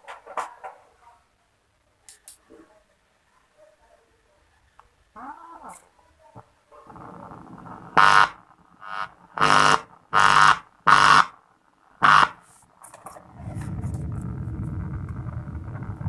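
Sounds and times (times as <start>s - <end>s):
faint hum: 6.2s - 16.0s
buzzy tone blasts: 7.7s - 11.4s, 12.0s - 12.4s.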